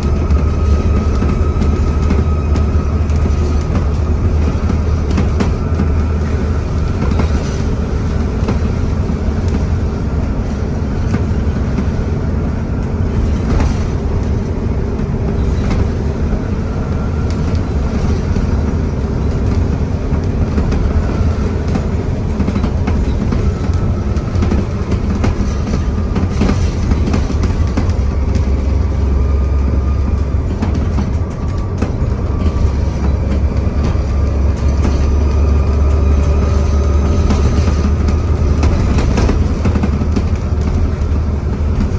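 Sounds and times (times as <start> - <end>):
bus diesel engine drone: 0.0 - 41.9
knocks and rattles: 0.0 - 41.9.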